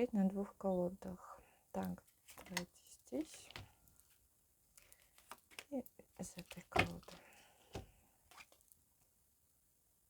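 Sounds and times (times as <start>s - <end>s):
card tapping: 4.8s - 8.5s.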